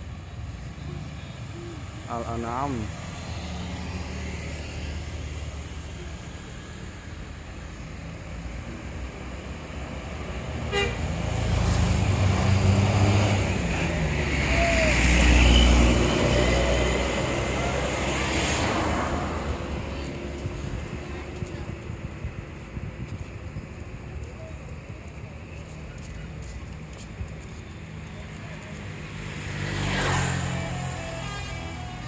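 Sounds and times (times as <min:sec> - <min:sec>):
diesel bus driving past: 0:00.0 - 0:22.9
road traffic: 0:00.0 - 0:32.0.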